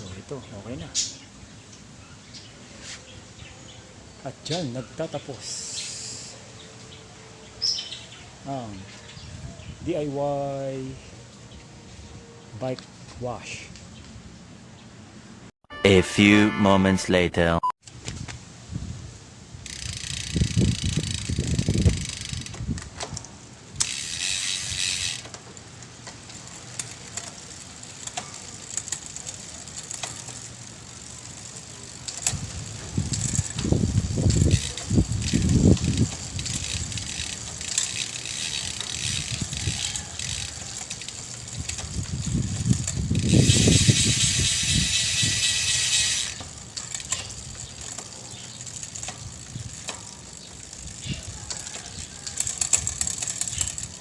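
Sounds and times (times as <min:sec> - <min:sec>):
bicycle freewheel ticking: 0:19.6 - 0:22.8, 0:23.8 - 0:54.0.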